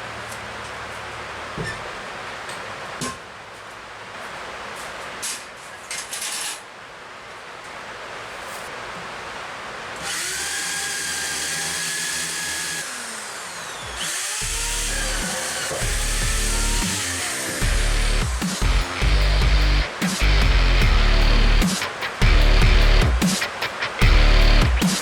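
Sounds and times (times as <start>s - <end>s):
power drill whining: 10.0s - 19.5s
music with heavy beat: 15.8s - 25.0s.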